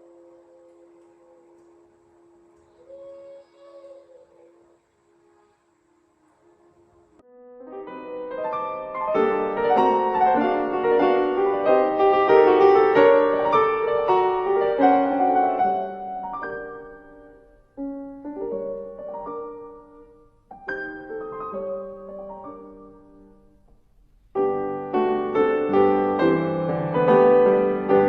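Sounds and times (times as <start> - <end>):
piano music: 6.4 - 23.6, 24.3 - 28.0.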